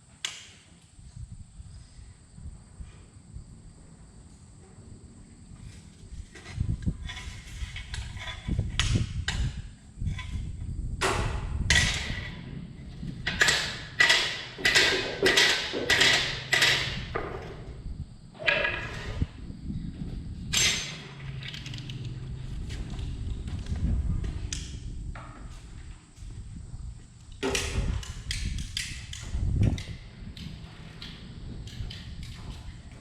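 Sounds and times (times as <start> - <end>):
low rumble: 17.7 - 33.0.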